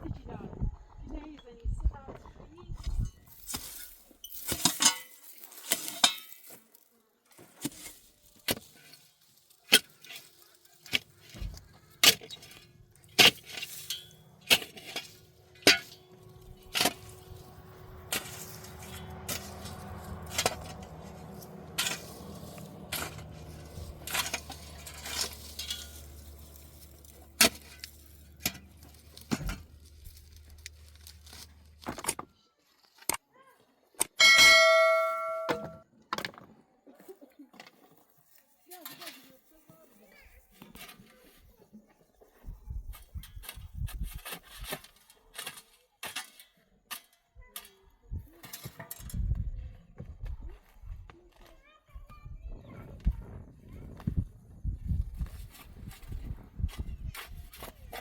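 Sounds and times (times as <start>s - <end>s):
sharp knocks and clinks: 34.2s - 35.8s.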